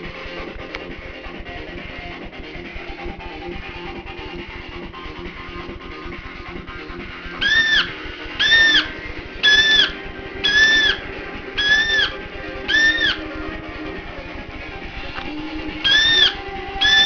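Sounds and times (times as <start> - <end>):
background music: 0.0 - 17.0
parrot squawking: 7.3 - 13.4, 15.0 - 17.0.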